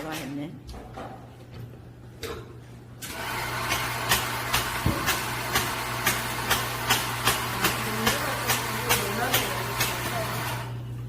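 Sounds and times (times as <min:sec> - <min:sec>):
machine humming: 0:02.9 - 0:11.0.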